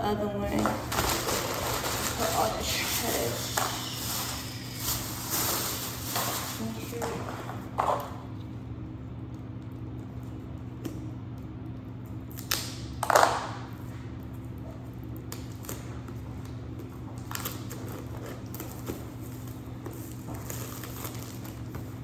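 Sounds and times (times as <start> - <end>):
steady low hum: 0.0 - 22.0
packaging crumpling: 0.5 - 8.2, 17.2 - 22.0.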